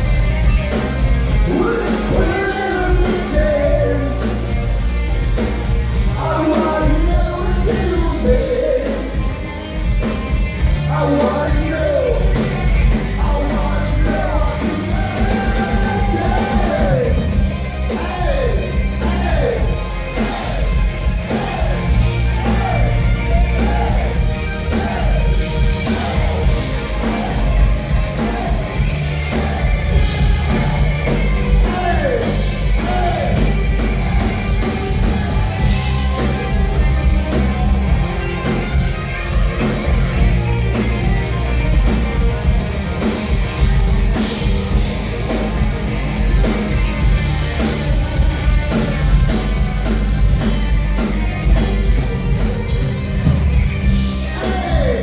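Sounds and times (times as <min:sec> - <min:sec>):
bass guitar: 0:00.0 - 0:55.0
drums: 0:00.0 - 0:55.0.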